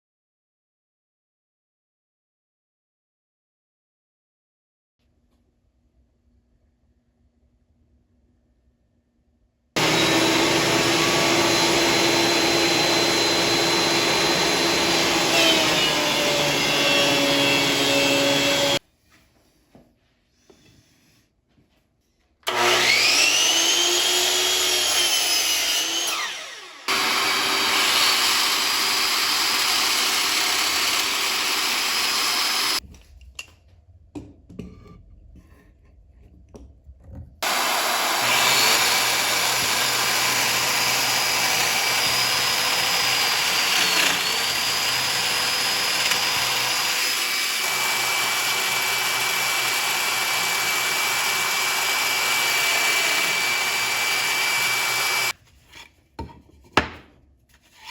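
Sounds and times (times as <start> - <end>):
woodworking power tool running: 9.8 - 18.8, 22.4 - 32.8, 37.4 - 55.4.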